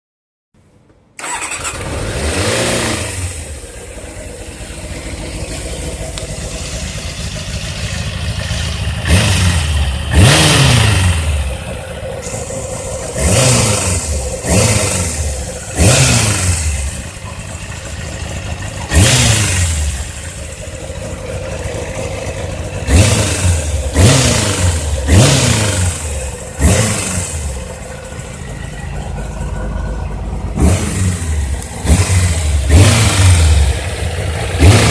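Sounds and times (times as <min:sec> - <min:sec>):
motorcycle throttle blips: 0:02.6 - 0:34.9
motorcycle engine idling: 0:03.1 - 0:34.9.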